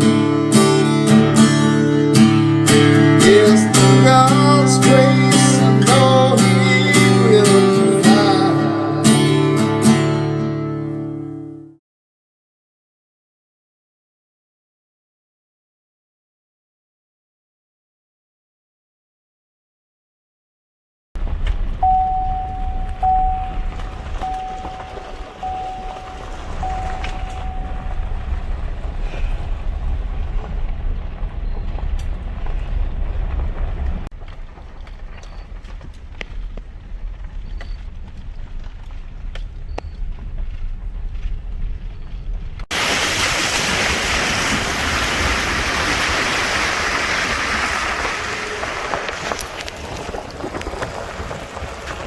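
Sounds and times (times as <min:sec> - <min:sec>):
vehicle rumbling: 0:21.2 - 0:42.8, 0:44.6 - 0:52.0
faint high tone: 0:21.8 - 0:28.3.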